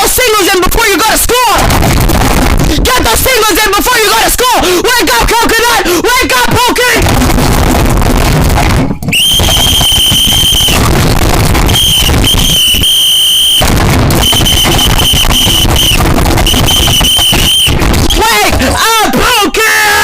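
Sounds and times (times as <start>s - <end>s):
rough crackling rumble: 1.6s - 3.3s, 7.0s - 18.8s.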